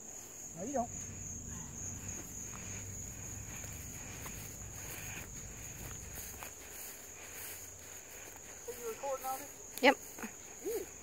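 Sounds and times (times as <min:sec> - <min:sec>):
crickets chirping: 0:00.0 - 0:11.0.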